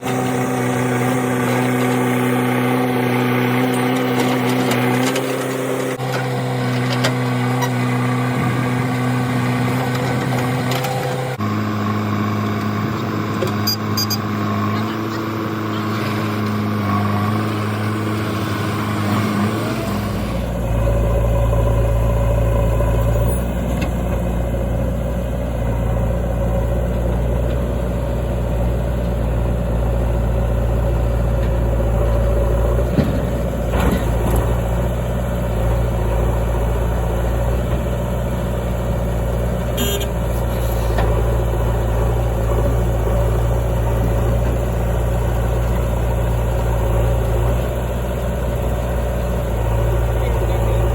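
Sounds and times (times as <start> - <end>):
heavy diesel engines running: 0.0 - 50.9.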